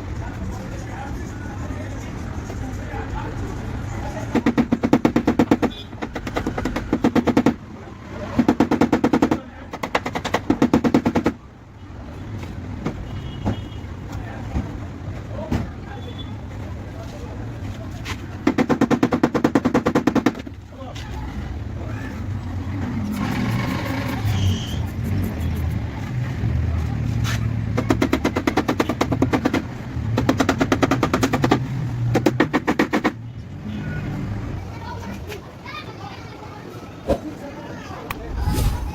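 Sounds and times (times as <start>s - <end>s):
rapid tapping on sheet metal: 4.3s - 7.6s, 8.4s - 11.4s, 18.4s - 20.5s, 27.8s - 33.2s.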